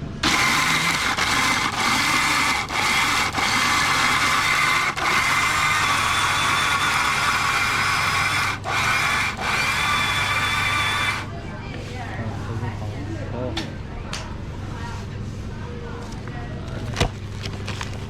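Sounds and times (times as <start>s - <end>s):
electric grinder whirring: 0.0s - 11.3s.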